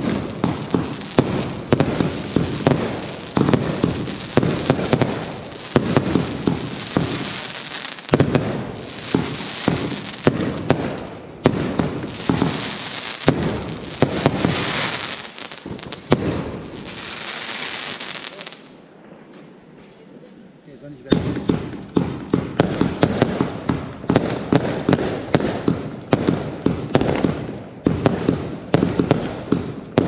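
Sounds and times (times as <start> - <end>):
firework shells bursting: 0.0 - 18.4
fireworks crackle and rumble: 0.0 - 30.0.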